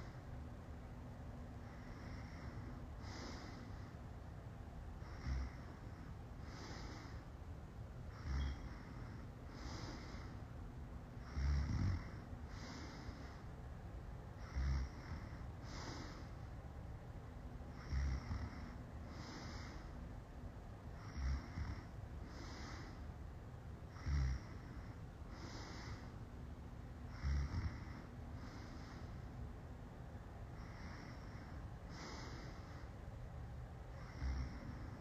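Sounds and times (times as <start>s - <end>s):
soft breath out: 1.6s - 4.1s, 8.3s - 10.5s, 27.6s - 29.4s, 30.5s - 33.1s
person snoring: 5.0s - 5.7s, 8.2s - 8.9s, 11.2s - 13.2s, 14.4s - 16.3s, 17.8s - 19.8s, 21.0s - 23.0s, 23.9s - 24.8s, 27.1s - 29.0s, 34.0s - 34.9s.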